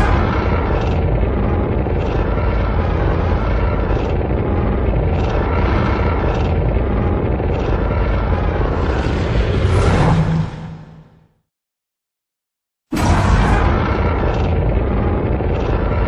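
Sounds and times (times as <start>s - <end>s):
monster roar deep rumble: 0.0s - 11.2s, 12.9s - 16.0s.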